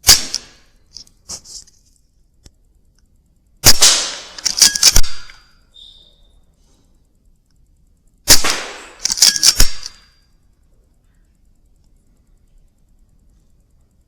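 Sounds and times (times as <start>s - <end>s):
air rifle firing: 0.0s - 0.7s, 3.6s - 5.4s, 8.2s - 10.1s.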